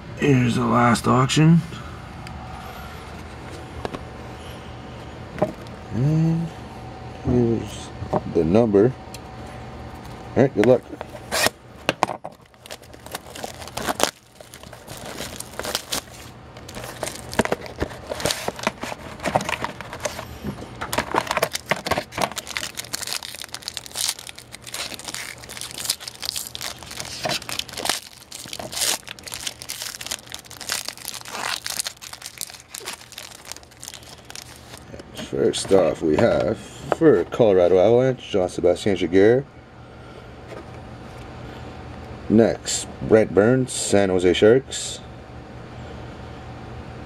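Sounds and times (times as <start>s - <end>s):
cards and packaging handled: 10.6s - 36.3s
plastic wrapping crinkling and tearing: 12.3s - 34.9s.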